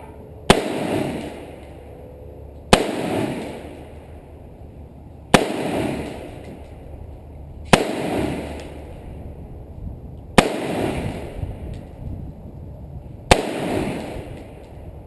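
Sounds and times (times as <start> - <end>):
gunshots with rolling echo: 0.0 - 1.9, 2.7 - 4.6, 5.3 - 6.9, 7.7 - 9.4, 10.4 - 11.7, 13.3 - 14.7.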